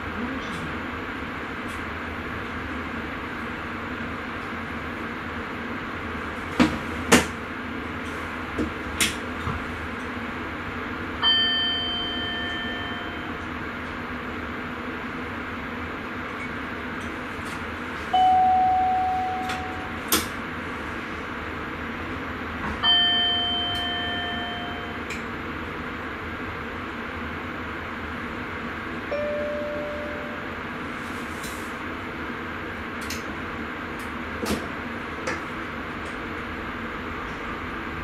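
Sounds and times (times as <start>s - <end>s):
train running noise: 0.0s - 38.0s
bell-like ding: 11.2s - 13.4s, 18.2s - 20.0s, 22.8s - 25.1s, 29.1s - 30.4s.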